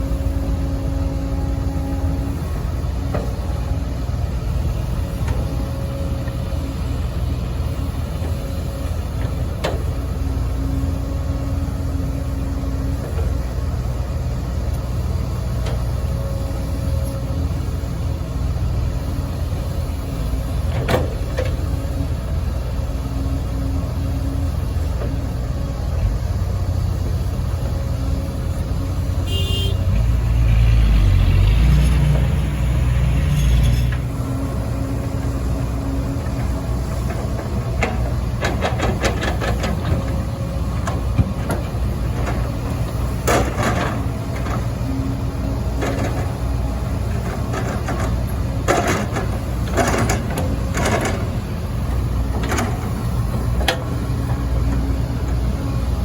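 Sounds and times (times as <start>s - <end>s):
excavator diesel engine running: 0.0s - 56.0s
metal clanks and scrapes: 33.2s - 34.1s.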